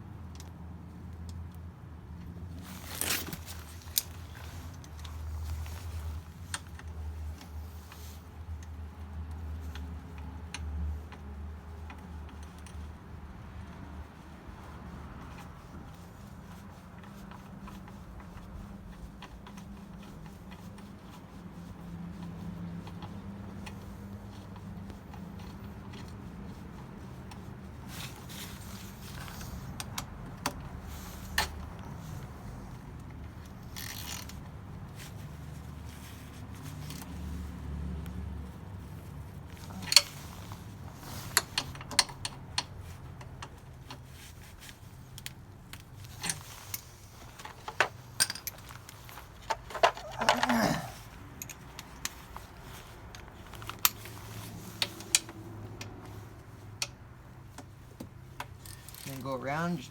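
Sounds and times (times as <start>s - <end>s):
metal hand tools clinking: 48.2s - 52.2s.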